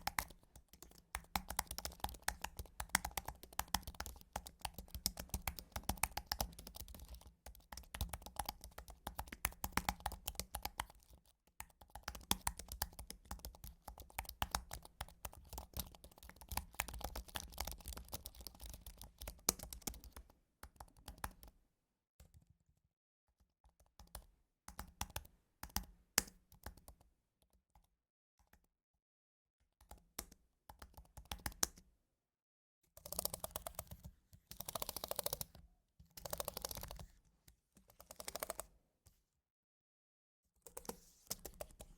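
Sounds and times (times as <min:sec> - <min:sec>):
typing on a keyboard: 0:00.0 - 0:21.5, 0:29.9 - 0:31.8, 0:33.0 - 0:35.6, 0:36.2 - 0:37.1.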